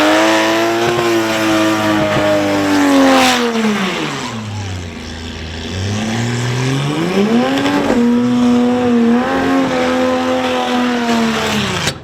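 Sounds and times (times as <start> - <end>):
car engine revving hard: 0.0 - 12.0.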